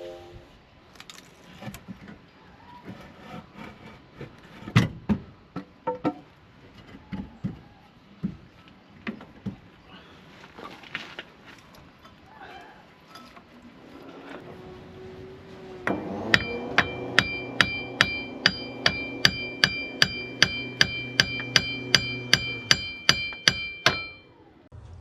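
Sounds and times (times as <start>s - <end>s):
hammer striking metal: 15.9s - 24.3s.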